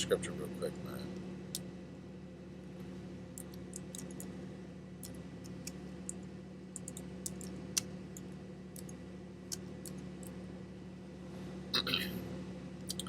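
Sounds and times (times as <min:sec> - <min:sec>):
low electrical hum: 0:00.0 - 0:13.0
mouse and keyboard clicks: 0:06.8 - 0:10.0.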